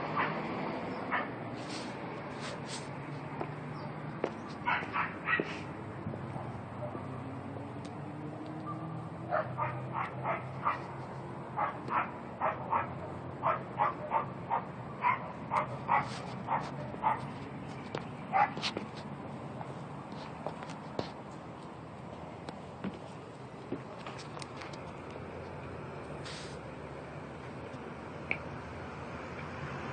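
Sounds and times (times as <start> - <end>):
dog barking: 1.1 - 1.3, 4.6 - 5.7, 9.3 - 10.9, 11.6 - 17.3, 18.3 - 18.6.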